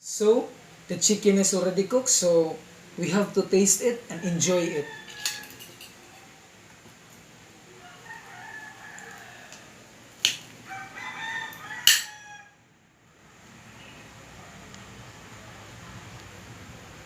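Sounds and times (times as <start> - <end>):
rooster crowing: 4.1 - 6.5, 7.6 - 12.7.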